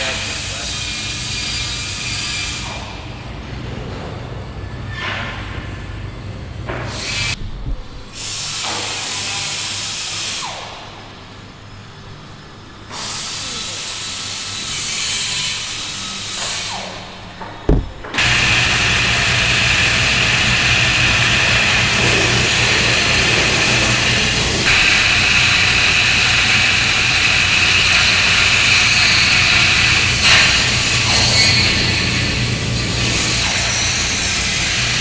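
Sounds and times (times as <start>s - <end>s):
sharp knock: 17.7s - 18.3s
compressed air hissing: 17.7s - 32.2s.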